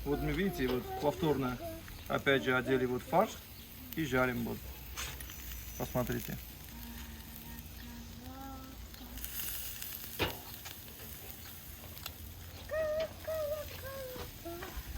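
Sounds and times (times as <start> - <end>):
meat sizzling over charcoal: 0.0 - 14.9
sharp crackle: 0.0 - 14.9.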